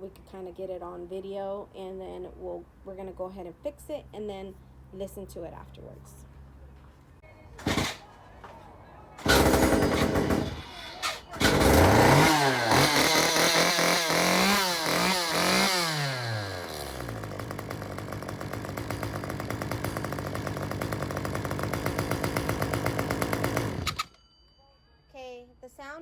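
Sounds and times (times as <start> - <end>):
chainsaw revving and idling: 7.6 - 8.0, 9.2 - 24.1
chainsaw squealing: 7.6 - 8.1, 9.2 - 24.2.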